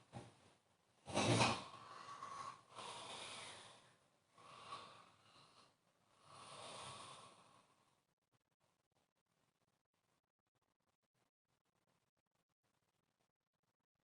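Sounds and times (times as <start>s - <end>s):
loud snort: 1.1s - 3.8s
person snoring: 1.1s - 7.8s.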